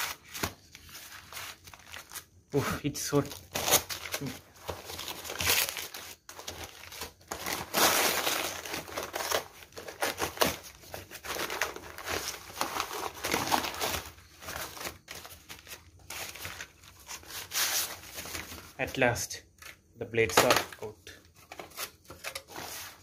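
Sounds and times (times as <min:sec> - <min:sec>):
wrapping crumpling and tearing: 0:00.0 - 0:02.4, 0:03.0 - 0:19.0.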